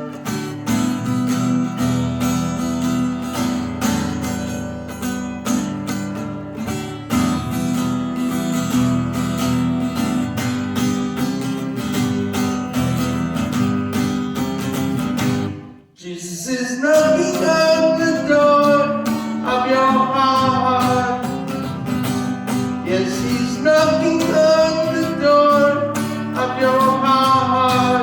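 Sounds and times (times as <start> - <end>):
acoustic guitar strumming: 0.0 - 28.0.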